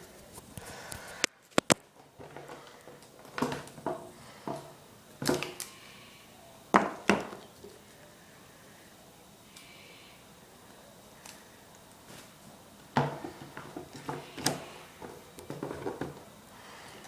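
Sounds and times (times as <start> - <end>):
hard objects knocking and clattering: 1.6 - 5.6, 6.7 - 7.5, 12.9 - 16.4.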